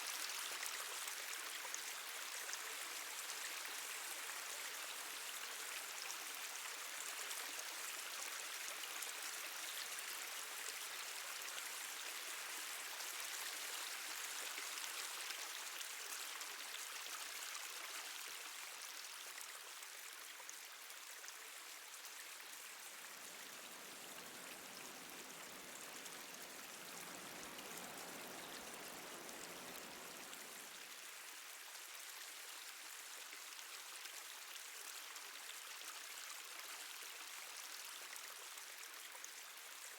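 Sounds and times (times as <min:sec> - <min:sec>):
water dripping and trickling: 0:19.4 - 0:32.0
hiss of running water: 0:21.7 - 0:31.2
deep low water rush: 0:22.3 - 0:31.1.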